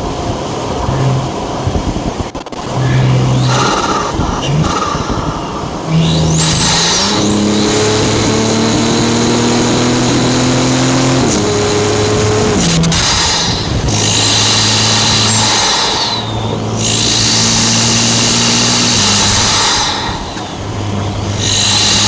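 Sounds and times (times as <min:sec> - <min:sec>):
car engine accelerating: 0:00.0 - 0:22.0
high turbo whistle: 0:03.4 - 0:20.6.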